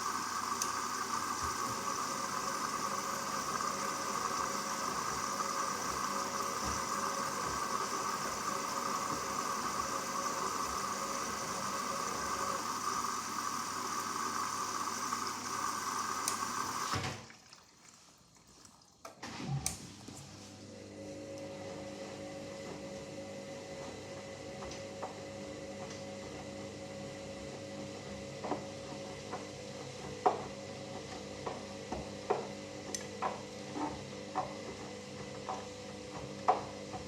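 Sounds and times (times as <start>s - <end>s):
washing machine water rushing: 0.0s - 19.9s.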